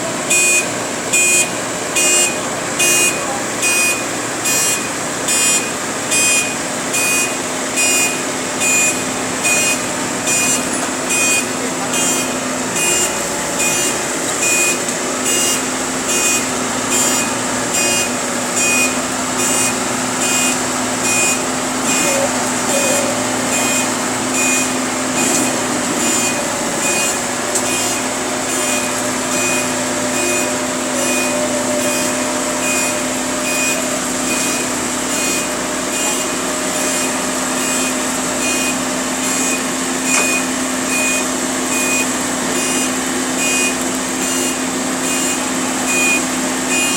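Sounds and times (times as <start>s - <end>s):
engine hum: 0.0s - 46.9s
reversing alarm beeping: 0.3s - 46.9s.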